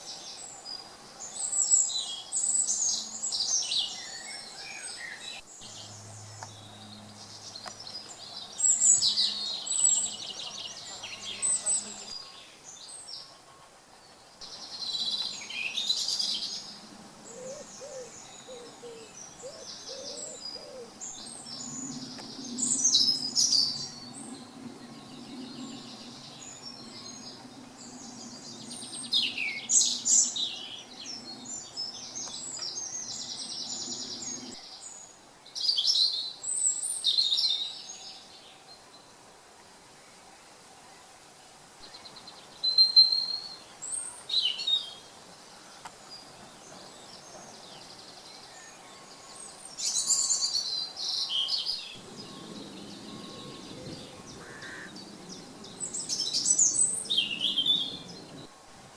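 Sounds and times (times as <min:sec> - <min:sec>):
songbirds singing: 0:00.0 - 0:58.7
steady low hum: 0:05.4 - 0:12.2
low hooting notes: 0:52.0 - 0:58.5.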